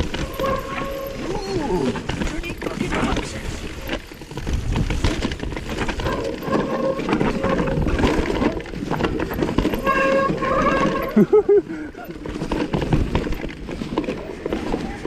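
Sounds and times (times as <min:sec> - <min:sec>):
disc brakes squealing: 0:00.0 - 0:03.1, 0:09.3 - 0:11.4
mountain bike rattling on trail: 0:00.0 - 0:15.0.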